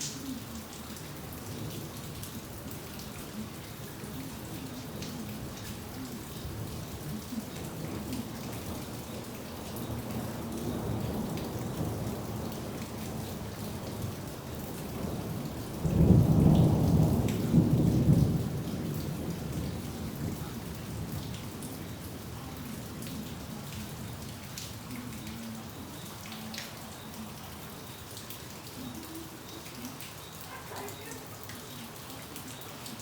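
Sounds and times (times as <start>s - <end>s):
rain pattering: 0.0s - 33.0s
thunder rumbling: 14.9s - 21.5s.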